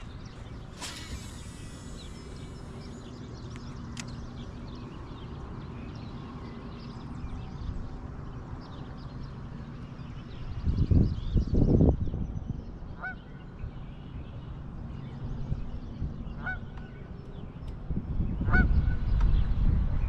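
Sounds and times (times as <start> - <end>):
sharp click: 3.5 - 4.2.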